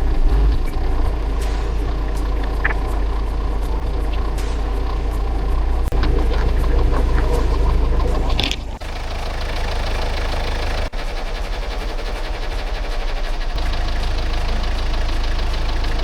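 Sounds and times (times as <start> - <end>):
engine-like rumble: 0.0 - 16.0.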